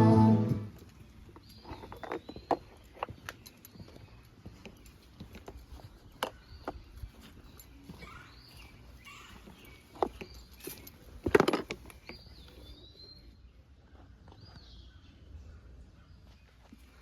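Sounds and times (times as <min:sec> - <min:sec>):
montage music: 0:00.0 - 0:00.8.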